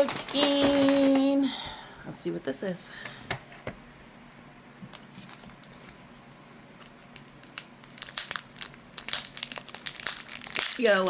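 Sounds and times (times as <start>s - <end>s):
toy package clicks and crackles: 0.0s - 1.4s, 6.8s - 11.0s.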